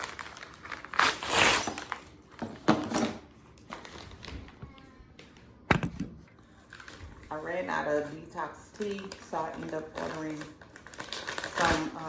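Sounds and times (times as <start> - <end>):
package rustling: 0.0 - 2.4, 6.5 - 7.5, 8.8 - 12.0.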